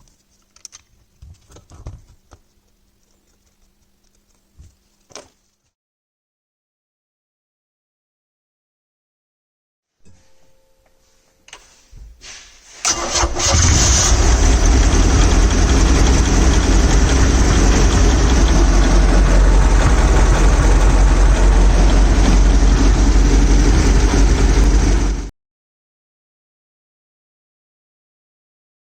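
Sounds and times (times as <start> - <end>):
starter motor cranking: 12.9 - 24.7
boat engine running loudly: 14.2 - 25.3.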